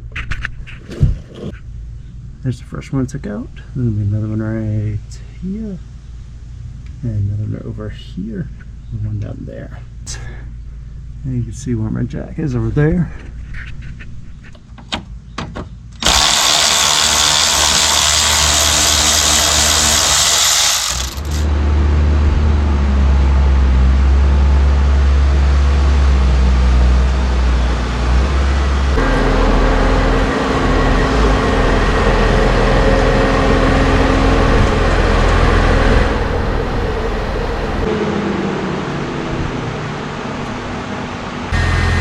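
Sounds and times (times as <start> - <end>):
car engine idling: 19.2 - 37.9
car engine starting: 20.0 - 42.0.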